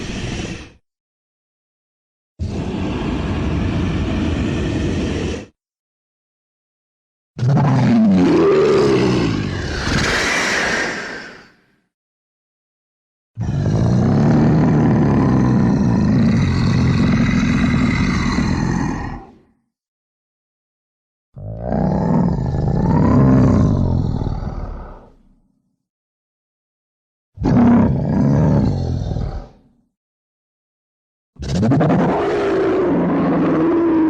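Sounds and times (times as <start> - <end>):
dragon roar: 0.0 - 0.8, 2.4 - 5.6, 7.4 - 11.6, 13.4 - 19.5, 21.4 - 25.2, 27.4 - 29.8, 31.4 - 34.0.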